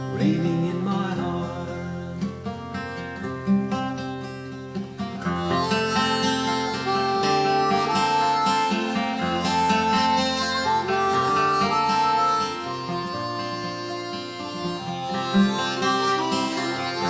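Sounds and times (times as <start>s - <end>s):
fingerstyle acoustic guitar: 0.0s - 17.0s
harmonica melody: 4.2s - 17.0s.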